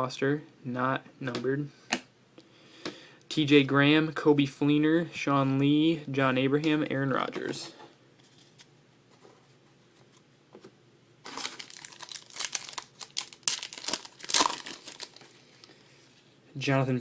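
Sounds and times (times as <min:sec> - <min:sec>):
wrapper tearing and crinkling: 0:11.2 - 0:15.6.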